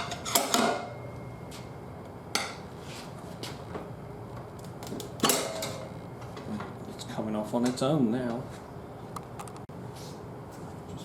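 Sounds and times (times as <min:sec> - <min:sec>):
sharp metal clank: 0:05.2 - 0:05.9.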